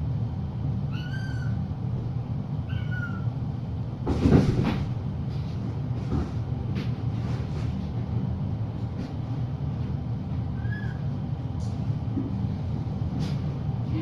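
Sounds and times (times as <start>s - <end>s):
steady low hum: 0.0s - 14.0s
kitten meowing: 0.9s - 1.6s, 2.7s - 3.3s, 10.6s - 11.0s.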